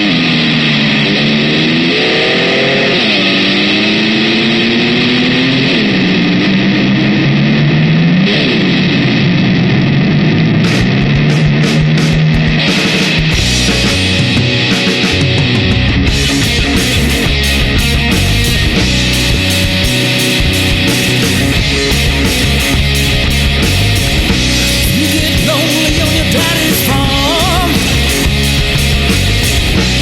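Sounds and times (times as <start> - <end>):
distorted slide guitar: 0.0 - 30.0
drum and cymbal hits: 10.6 - 30.0.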